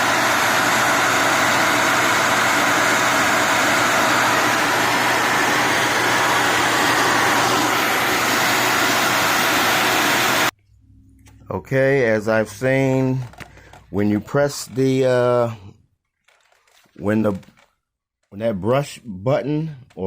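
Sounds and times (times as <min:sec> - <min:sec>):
vacuum cleaner running: 0:00.0 - 0:10.5.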